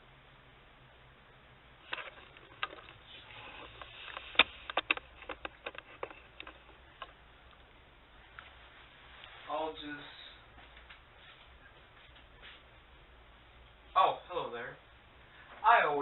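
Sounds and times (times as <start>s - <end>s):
sharp clicks and light knocks: 1.9s - 3.0s, 3.6s - 7.7s.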